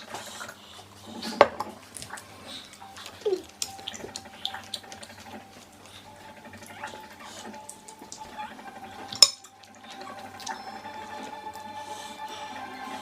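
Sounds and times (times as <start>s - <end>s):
cutlery clinking against plates: 1.3s - 11.7s.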